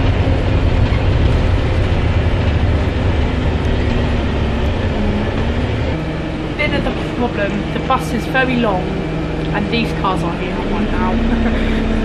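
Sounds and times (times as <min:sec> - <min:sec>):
bus engine rumble: 0:00.0 - 0:12.0
road noise: 0:00.0 - 0:12.0.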